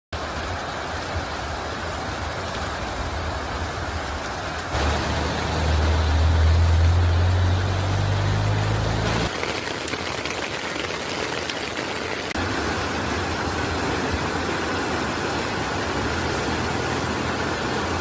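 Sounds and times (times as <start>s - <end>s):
heavy rain: 0.2s - 18.0s
vehicle engine running: 4.8s - 9.3s.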